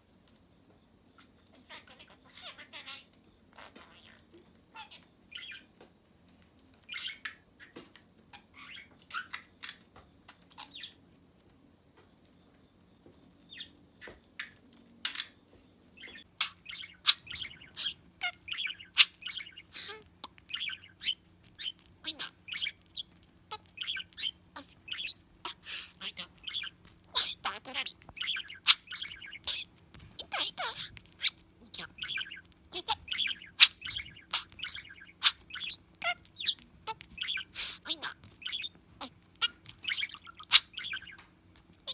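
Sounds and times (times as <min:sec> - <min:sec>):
budgerigar chirping and warbling: 0:06.9 - 0:07.2, 0:16.0 - 0:41.9
budgerigar sharp clicks: 0:16.0 - 0:41.9.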